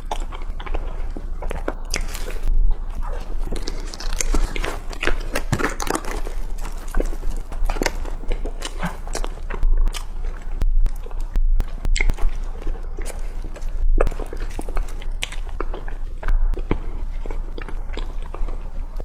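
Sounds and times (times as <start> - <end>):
person chewing bread: 0.0 - 19.0
steady low hum: 0.0 - 19.0.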